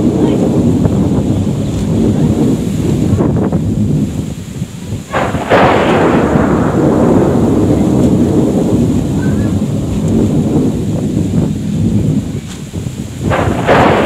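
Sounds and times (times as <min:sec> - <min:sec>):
thunder clap and rumble: 0:00.0 - 0:14.0.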